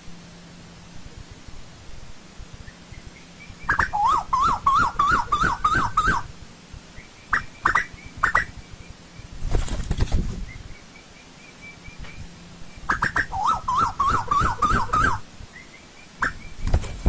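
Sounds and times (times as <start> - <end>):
koel calling: 2.6 - 6.3, 6.9 - 9.3, 10.5 - 16.6.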